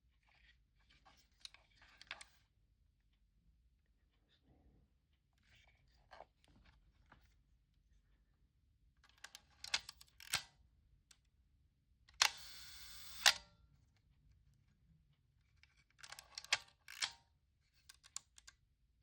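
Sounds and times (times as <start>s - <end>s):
camera shutter clicks: 12.2s - 13.5s
camera winding clicks: 16.0s - 17.2s.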